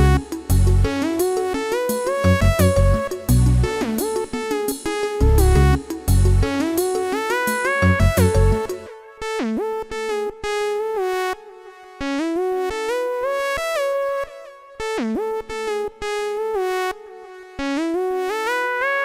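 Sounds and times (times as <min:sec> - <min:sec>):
synthesizer melody: 0:00.0 - 0:19.0.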